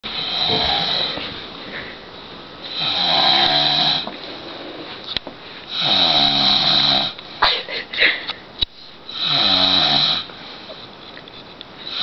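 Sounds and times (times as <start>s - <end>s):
man snoring loudly: 0.1s - 1.2s, 2.7s - 4.1s, 5.7s - 7.2s, 9.1s - 10.3s.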